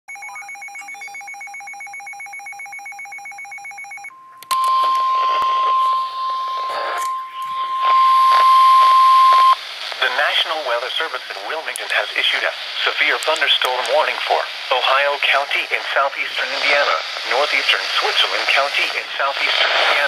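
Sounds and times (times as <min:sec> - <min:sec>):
rapid electronic beeping: 0:00.1 - 0:09.6
steady high alarm tone: 0:00.1 - 0:09.6
crackling hiss: 0:04.8 - 0:20.0.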